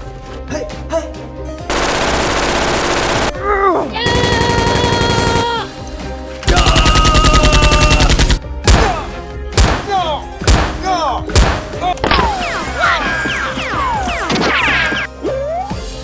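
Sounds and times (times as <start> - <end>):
rapid automatic gunfire: 1.7 - 3.4, 4.1 - 5.7, 6.5 - 8.4.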